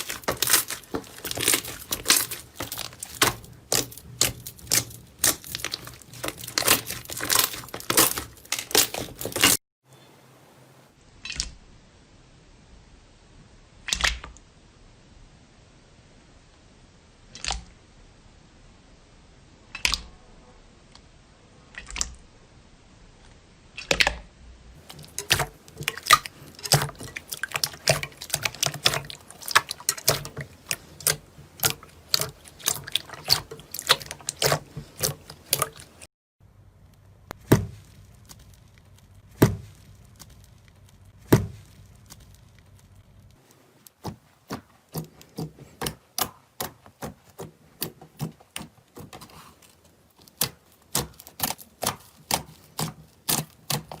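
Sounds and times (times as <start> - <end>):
slime popping and crackling: 0.0 - 9.6, 24.8 - 36.1, 36.9 - 49.4, 50.1 - 54.0.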